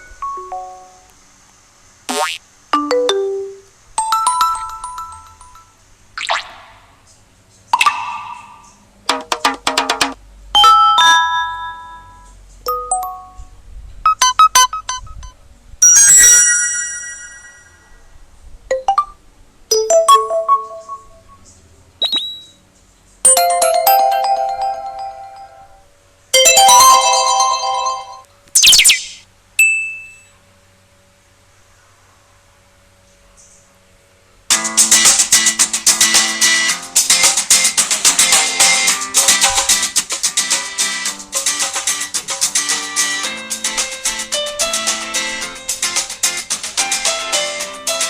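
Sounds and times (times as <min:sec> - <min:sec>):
smartphone alert chimes: 0:02.8 - 0:03.6, 0:19.7 - 0:21.3, 0:26.4 - 0:28.9.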